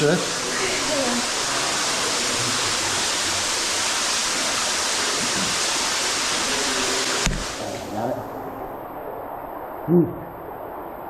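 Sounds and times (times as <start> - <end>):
waterfall splashing down: 0.0 - 8.3.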